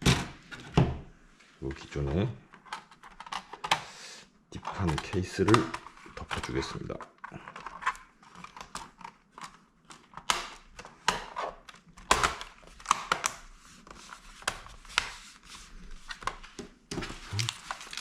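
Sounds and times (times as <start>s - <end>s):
plastic clips clicking and snapping: 4.6s - 13.4s
plastic scraping and handling rustle: 4.6s - 18.0s.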